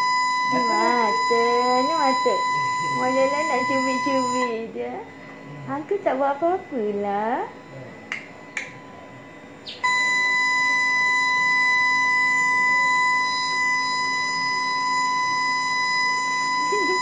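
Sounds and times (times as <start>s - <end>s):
steady high-pitched electronic beep: 0.0s - 4.6s, 8.4s - 17.0s.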